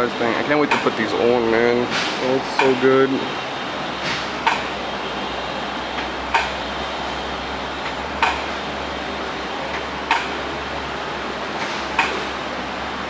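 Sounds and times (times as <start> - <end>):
low machine hum: 0.0 - 13.0
sharp clicks: 4.4 - 4.8, 6.0 - 6.6, 7.8 - 8.6, 9.7 - 10.4, 12.0 - 12.3.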